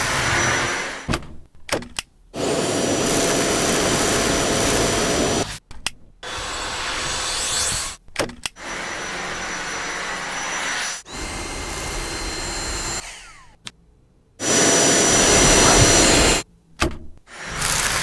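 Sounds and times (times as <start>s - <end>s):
stick vacuum cleaner running: 2.4s - 5.5s, 8.6s - 13.4s, 14.4s - 16.4s.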